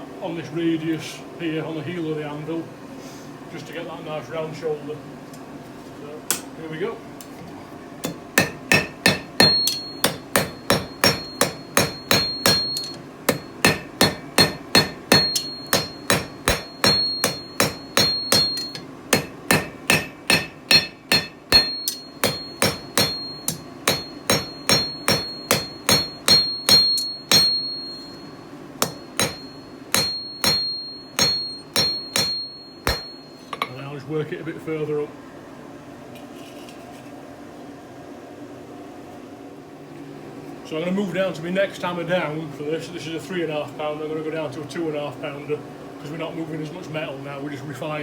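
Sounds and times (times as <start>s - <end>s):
hammer striking hot steel: 8.0s - 33.7s
anvil ringing: 8.4s - 33.8s.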